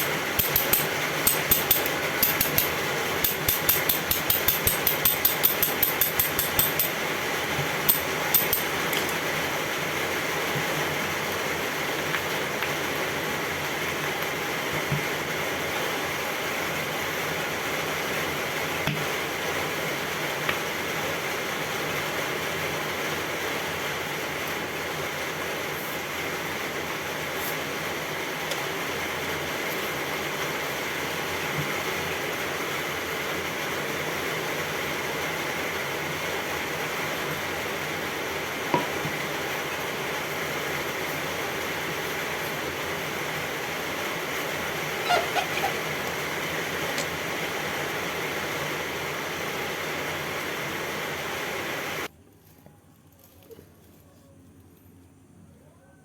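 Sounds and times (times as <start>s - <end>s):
metallic knocks and clinks: 0.0s - 2.7s, 3.3s - 7.0s, 7.9s - 8.7s
steady background hum: 0.0s - 56.0s.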